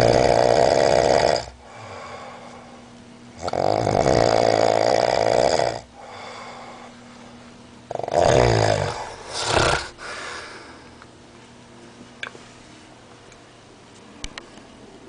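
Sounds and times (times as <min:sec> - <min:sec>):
man snoring heavily: 0:00.0 - 0:02.4, 0:03.4 - 0:06.9, 0:07.9 - 0:10.6
quiet breath: 0:01.6 - 0:03.0, 0:05.9 - 0:07.6.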